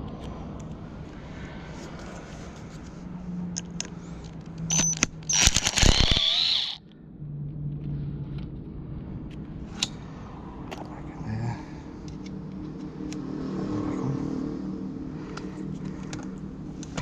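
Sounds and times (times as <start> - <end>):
cordless drill whining: 4.7 - 6.8
metal parts clicking: 4.7 - 6.8.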